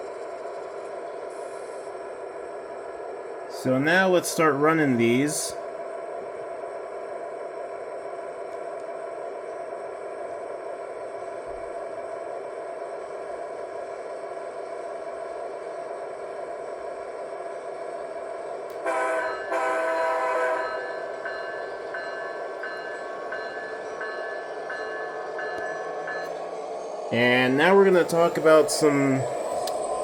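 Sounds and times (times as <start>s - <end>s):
train horn blasts: 18.7s - 20.9s.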